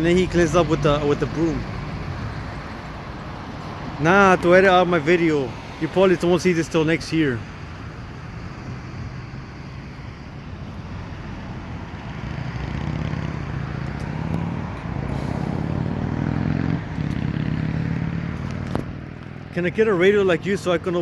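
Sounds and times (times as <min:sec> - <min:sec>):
vehicle engine running: 0:07.4 - 0:21.0.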